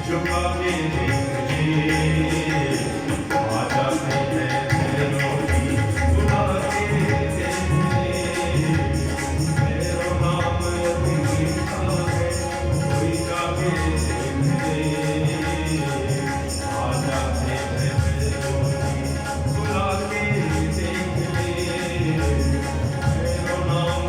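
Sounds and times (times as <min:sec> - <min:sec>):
jingling hand percussion: 0:00.0 - 0:24.0.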